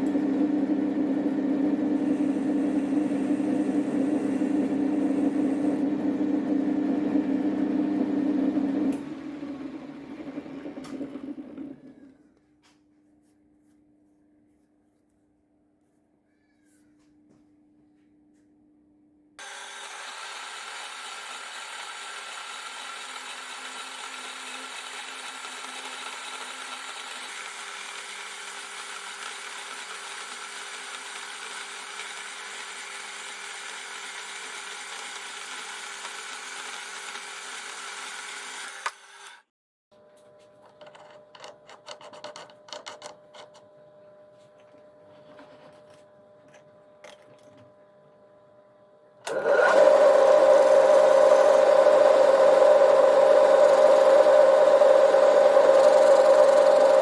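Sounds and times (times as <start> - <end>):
metal lathe cutting steel: 19.4 - 39.4, 49.3 - 57.0.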